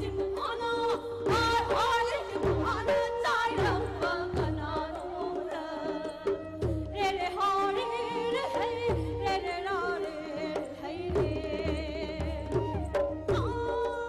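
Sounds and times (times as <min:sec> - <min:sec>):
people singing: 0:00.0 - 0:12.3.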